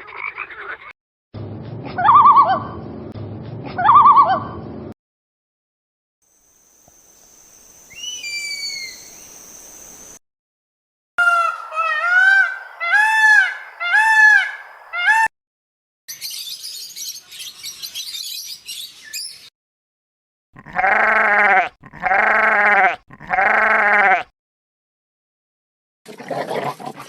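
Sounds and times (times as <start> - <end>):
high whistling bird calls: 7.9 - 9.3
goose honking: 11.2 - 15.3.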